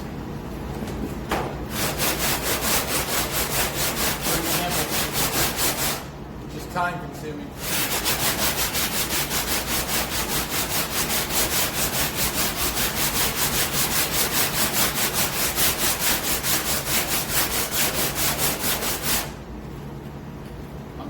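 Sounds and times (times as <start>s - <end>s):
sanding block scraping strokes: 1.7s - 6.1s, 7.6s - 19.4s.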